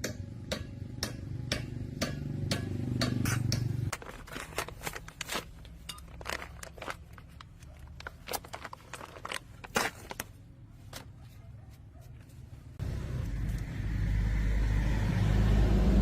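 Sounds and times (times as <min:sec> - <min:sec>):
low engine hum: 0:12.4 - 0:16.0.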